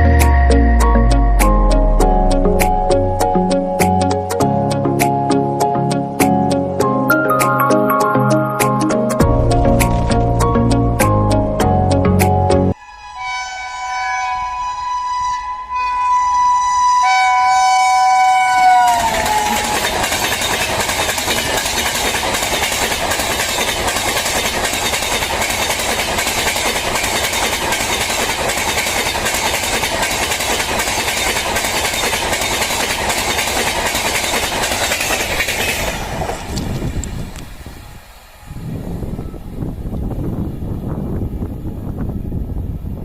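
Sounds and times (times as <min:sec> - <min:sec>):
two-tone locomotive horn: 0:12.8 - 0:20.4
train coaches rushing past: 0:18.0 - 0:42.1
wheels clicking over rail joints: 0:18.6 - 0:37.6.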